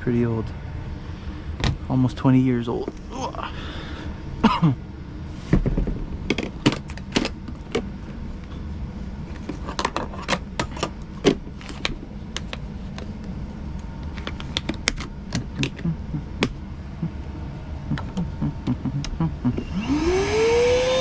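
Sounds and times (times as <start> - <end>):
steady low hum: 2.4 - 19.8
objects clicking and knocking: 3.7 - 16.6.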